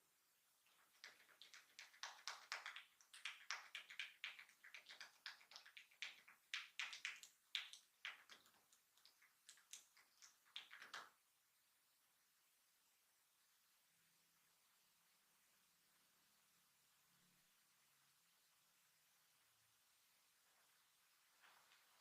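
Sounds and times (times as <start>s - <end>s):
hands tapping a head: 0.7s - 11.1s.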